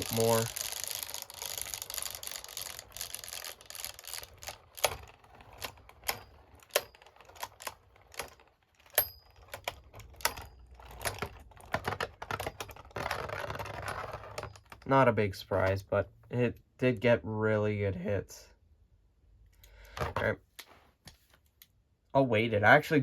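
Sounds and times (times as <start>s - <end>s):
spinning tops clashing: 0.0s - 5.0s.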